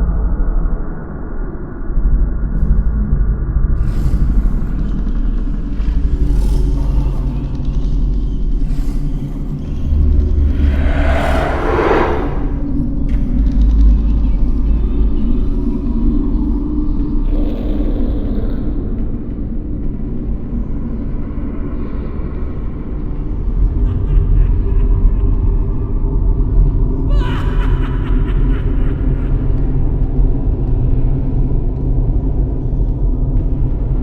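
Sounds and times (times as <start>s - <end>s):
deep rumbling drone: 3.6s - 20.9s.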